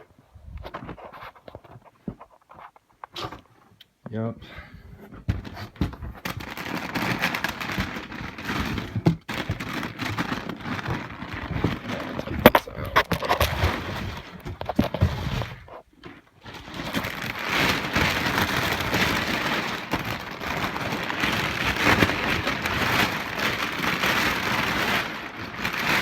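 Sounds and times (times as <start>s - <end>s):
plastic packaging crinkling: 5.4s - 26.0s.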